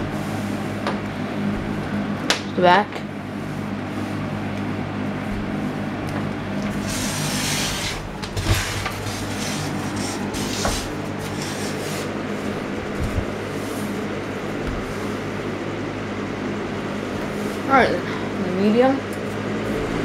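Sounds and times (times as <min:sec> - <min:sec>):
box fan running: 0:00.0 - 0:20.0
fan being handled: 0:00.0 - 0:20.0.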